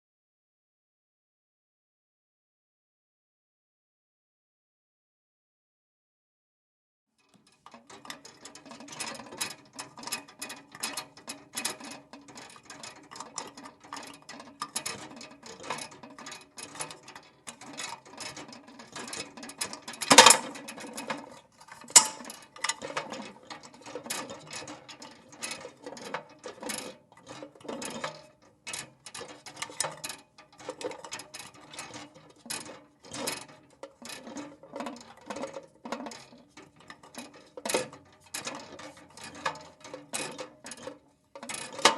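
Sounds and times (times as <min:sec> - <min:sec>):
lantern handle squeaking and clinking: 0:21.8 - 0:22.9
metal lantern clank: 0:22.0 - 0:22.3.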